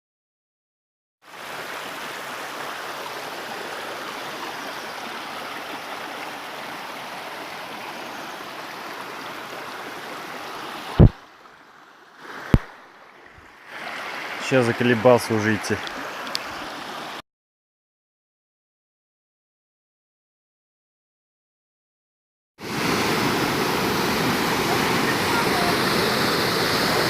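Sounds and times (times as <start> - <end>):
flowing water: 1.2 - 17.2, 22.6 - 27.0.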